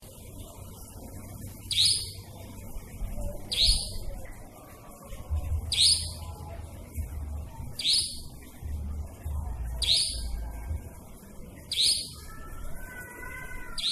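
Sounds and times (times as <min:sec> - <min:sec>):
nightjar calling: 0:01.6 - 0:02.2, 0:03.5 - 0:04.1, 0:05.6 - 0:06.3, 0:07.8 - 0:08.4, 0:09.8 - 0:10.5, 0:11.6 - 0:13.9.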